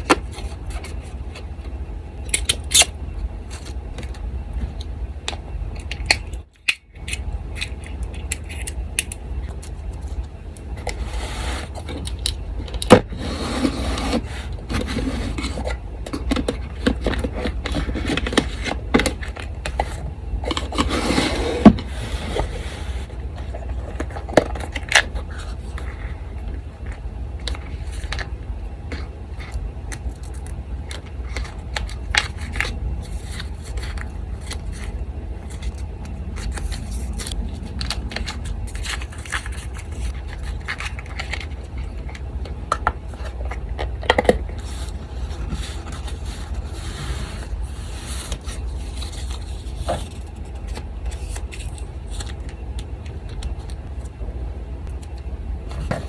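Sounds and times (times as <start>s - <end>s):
electric fan humming: 0.0s - 56.0s
craft tools clicking and scraping: 5.8s - 10.2s
paper rustling: 31.3s - 41.7s.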